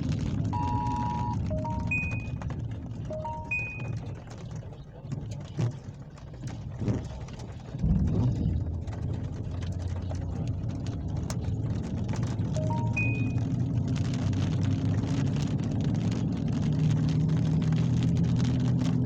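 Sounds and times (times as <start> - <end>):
rain hiss with crackles: 0.0 - 19.0
thunder rumbling: 7.8 - 10.8.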